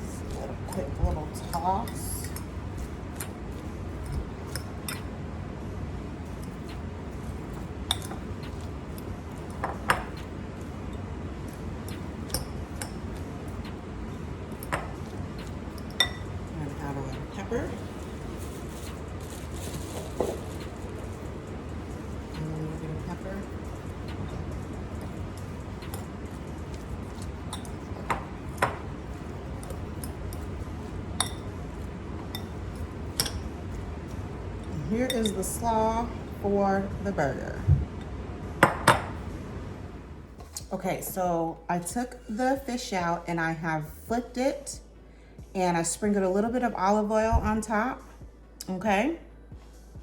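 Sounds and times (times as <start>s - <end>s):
low background noise: 0.0s - 50.0s
steady low hum: 0.0s - 50.0s
utensils clinking against bowl: 14.5s - 17.3s, 21.9s - 29.0s, 31.2s - 31.6s, 32.2s - 33.5s, 35.0s - 35.6s
utensils clinking against dishes: 14.6s - 17.2s.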